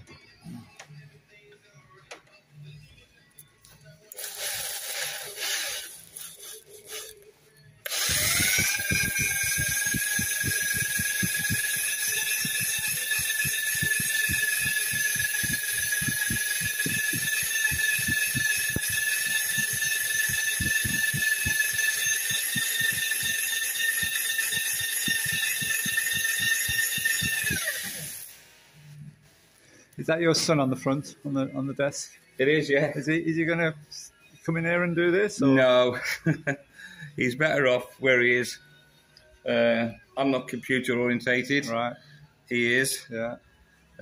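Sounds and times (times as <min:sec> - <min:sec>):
power hone motor whine: 0:07.9 - 0:28.3.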